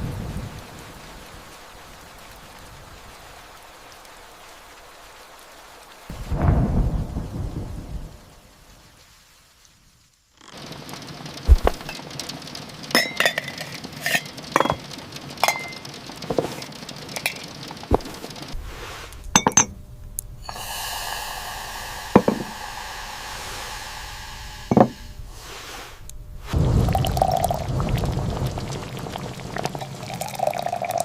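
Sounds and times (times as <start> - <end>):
steady rushing noise: 11.3 - 12.2, 14.0 - 30.4
dishes and utensils clinking: 13.0 - 16.5, 19.4 - 19.8.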